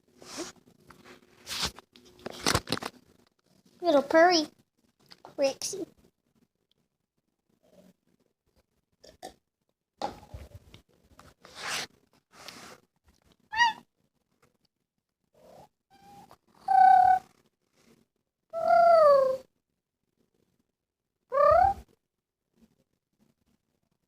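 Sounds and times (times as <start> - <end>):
kitten meowing: 13.5 - 13.8, 15.9 - 17.2, 21.3 - 21.8.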